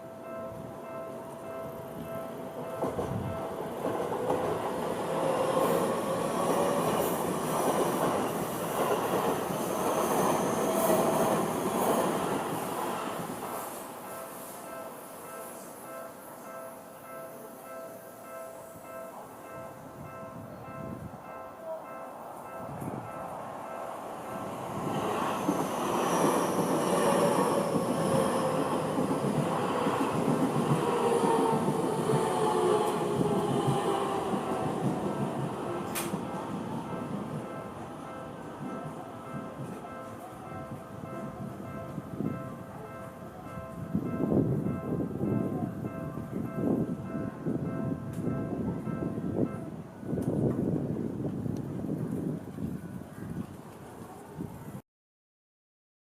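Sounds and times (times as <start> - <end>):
train wheels on rail: 1.9 - 16.5, 22.4 - 54.4
electric train running: 24.1 - 39.8.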